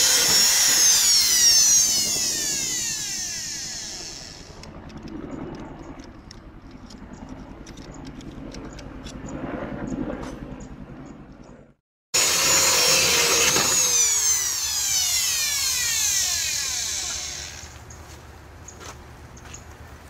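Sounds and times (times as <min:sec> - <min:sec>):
power tool whine winding down: 0:00.0 - 0:04.7, 0:12.2 - 0:17.8.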